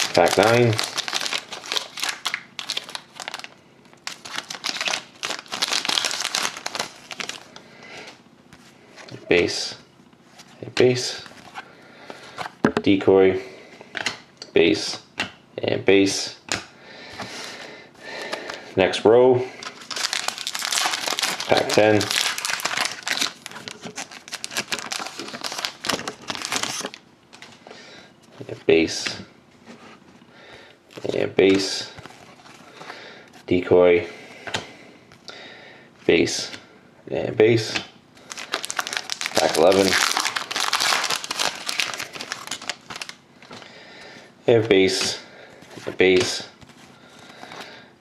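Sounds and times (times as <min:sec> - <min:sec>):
card pack wrapper crinkling: 0:00.0 - 0:07.6, 0:19.6 - 0:27.6, 0:38.2 - 0:43.7.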